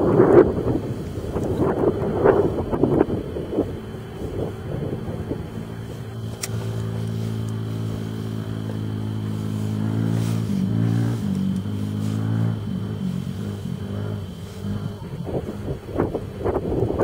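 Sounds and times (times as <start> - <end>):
motor engine running: 0.0 - 17.0
sharp click: 6.3 - 7.6.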